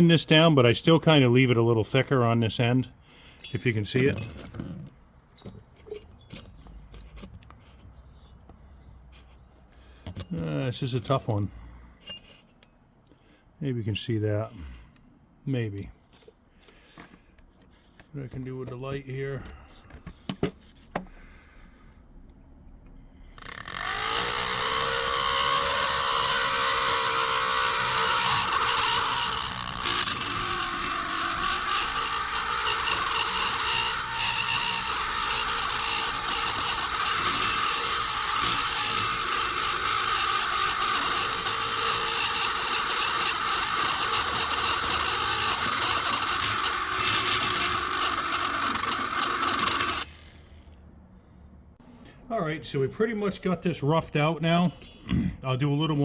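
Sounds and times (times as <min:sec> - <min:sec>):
rotary tool grinding metal: 0:23.2 - 0:50.6.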